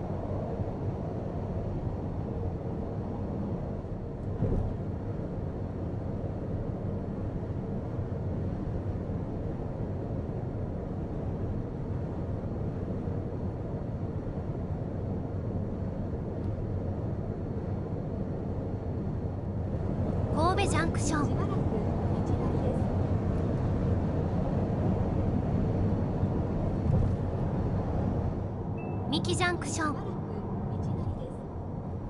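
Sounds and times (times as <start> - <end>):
tyre and road noise in car: 22.8 - 28.4.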